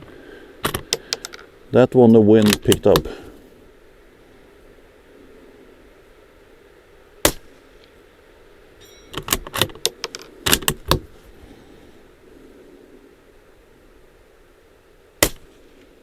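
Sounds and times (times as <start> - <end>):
suppressed rifle shot: 7.2 - 7.6, 15.2 - 15.6.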